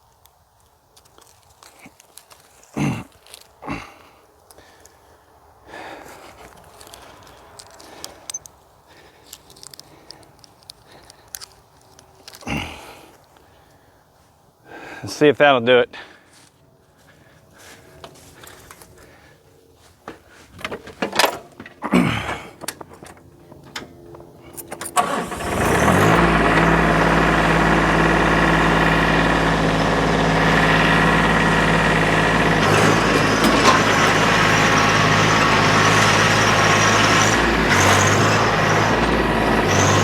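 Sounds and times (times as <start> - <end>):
tractor engine running: 20.4 - 40.0.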